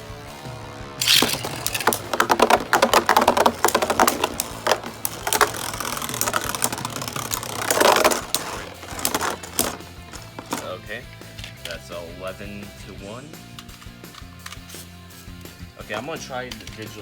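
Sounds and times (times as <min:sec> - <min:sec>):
spinning tops clashing: 0:01.0 - 0:10.7.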